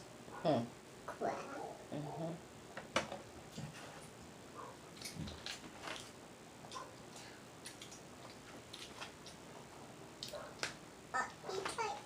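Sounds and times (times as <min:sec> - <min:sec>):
soft eating clicks and smacks: 0:04.9 - 0:11.4.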